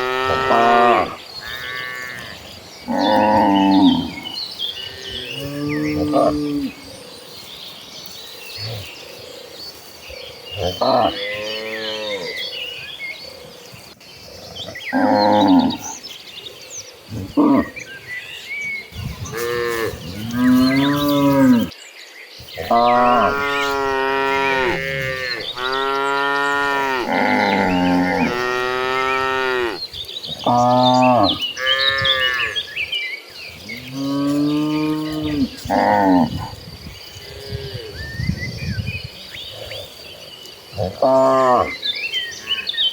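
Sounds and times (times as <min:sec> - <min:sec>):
cattle mooing: 0:00.0 - 0:02.3, 0:19.3 - 0:21.7, 0:22.6 - 0:29.8.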